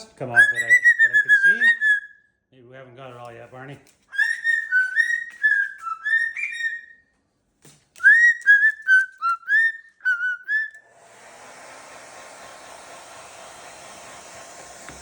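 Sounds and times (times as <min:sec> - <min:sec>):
cockatoo whistling: 0:00.3 - 0:02.3, 0:04.1 - 0:07.0, 0:08.0 - 0:10.8
hair dryer blowing: 0:10.8 - 0:15.0.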